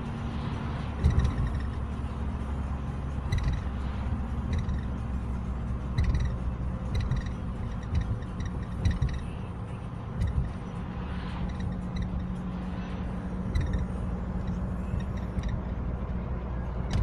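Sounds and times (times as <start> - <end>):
car engine drone: 0.0 - 17.0
high-pitched chirping squeak: 13.5 - 15.7.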